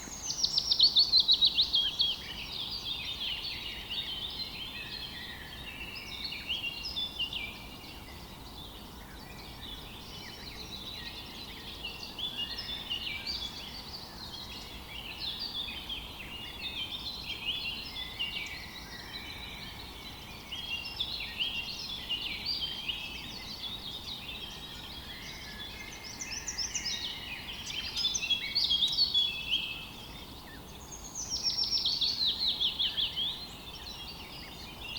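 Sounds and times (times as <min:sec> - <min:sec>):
small birds chirping: 0:00.0 - 0:34.9.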